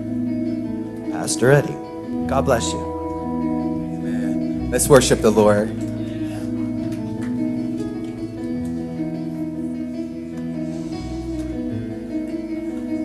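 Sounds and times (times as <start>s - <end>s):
band playing slow instrumental: 0.0s - 13.0s
guitar: 0.0s - 13.0s.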